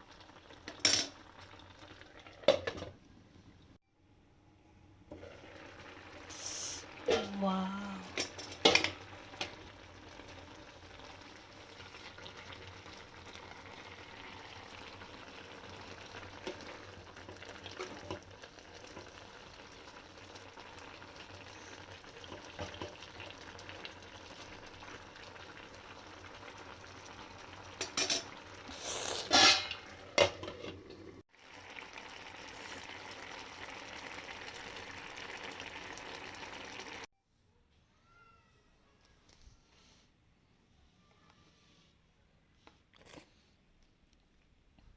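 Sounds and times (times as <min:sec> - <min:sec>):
food sizzling and bubbling in pot: 0:00.0 - 0:03.8, 0:05.0 - 0:37.1.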